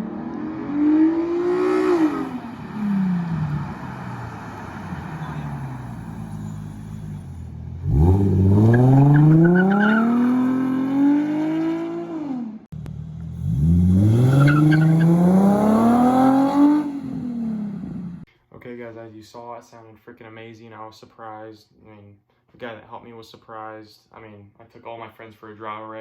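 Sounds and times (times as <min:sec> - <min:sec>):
car engine accelerating: 0:00.0 - 0:18.3.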